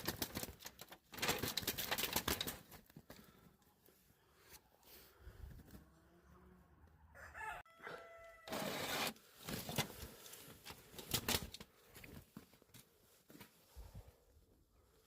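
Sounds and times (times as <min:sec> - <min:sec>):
rooster crowing: 0:07.0 - 0:08.7.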